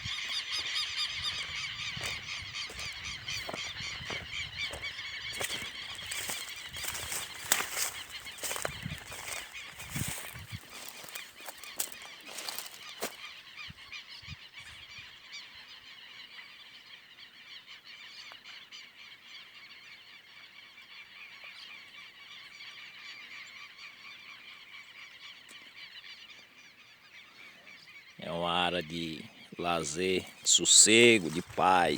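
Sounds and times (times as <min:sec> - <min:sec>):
lapwing flock calling: 0:00.0 - 0:15.2, 0:22.8 - 0:31.9.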